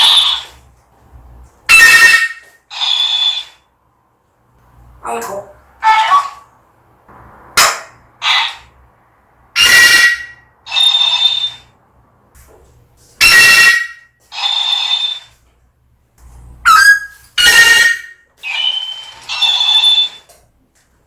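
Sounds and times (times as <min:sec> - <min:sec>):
parrot shrill calls: 0:00.0 - 0:00.6, 0:01.7 - 0:03.6, 0:08.2 - 0:08.7, 0:09.6 - 0:11.7, 0:13.2 - 0:15.4, 0:16.7 - 0:20.3
parrot whistle-like tone: 0:00.0 - 0:00.6, 0:01.7 - 0:03.6, 0:09.6 - 0:11.7, 0:13.2 - 0:15.4, 0:16.7 - 0:20.3.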